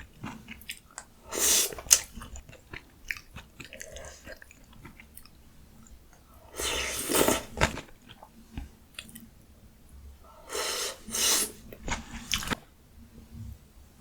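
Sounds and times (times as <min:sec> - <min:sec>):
close-miked eating noodles: 0:06.4 - 0:08.3, 0:10.3 - 0:12.6.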